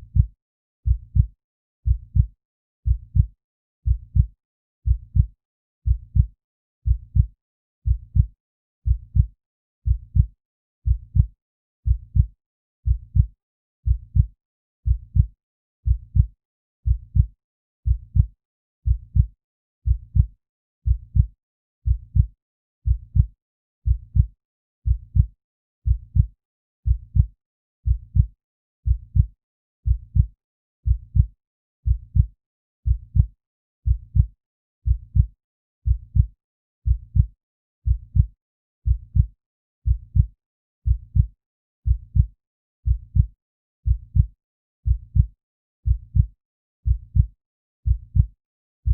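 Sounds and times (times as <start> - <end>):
heartbeat thumps: 17.9 - 18.3, 24.9 - 25.3, 28.9 - 29.3, 29.9 - 30.3, 31.9 - 32.3, 45.9 - 46.3, 46.9 - 47.3, 47.9 - 48.3.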